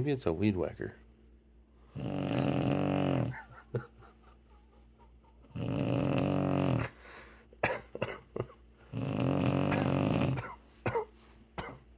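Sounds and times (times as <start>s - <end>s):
woman snoring: 2.0s - 3.4s, 5.5s - 7.0s, 8.9s - 10.4s.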